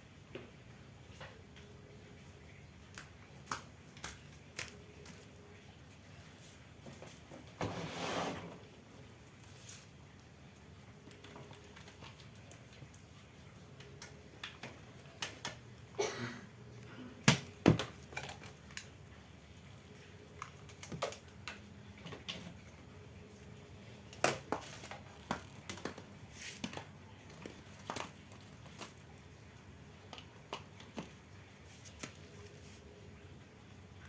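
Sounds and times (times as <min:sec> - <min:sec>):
clicks and taps of small objects: 0:02.8 - 0:05.4, 0:24.1 - 0:29.0.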